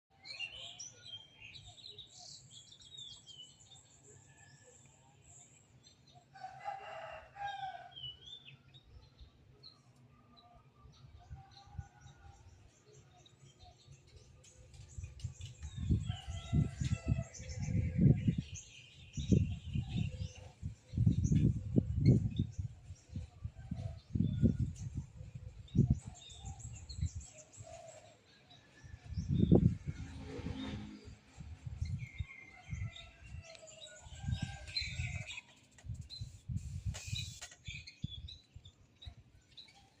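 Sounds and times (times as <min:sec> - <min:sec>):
wind buffeting microphone: 0:14.2 - 0:27.7, 0:28.8 - 0:38.7.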